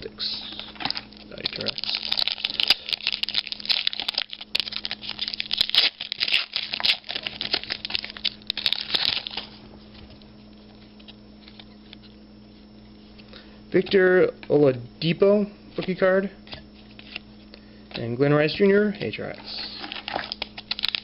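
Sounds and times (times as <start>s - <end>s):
foil pack crinkling: 0.5s - 12.0s, 19.6s - 21.0s.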